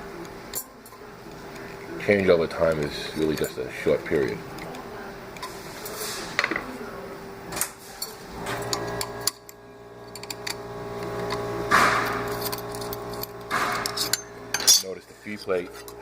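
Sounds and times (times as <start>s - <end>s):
steady machine hum: 0.0s - 16.0s
metal parts clinking: 8.0s - 10.6s, 11.2s - 15.0s.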